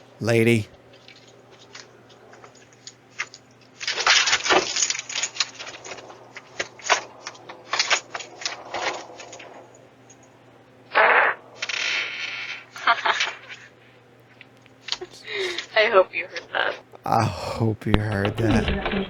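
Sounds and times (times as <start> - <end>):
crackling and rustling with clicks: 0.9 - 15.1.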